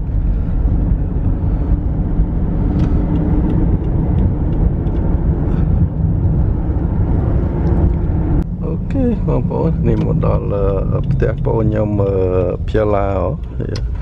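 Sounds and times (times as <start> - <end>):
car engine and road noise: 0.0 - 14.0.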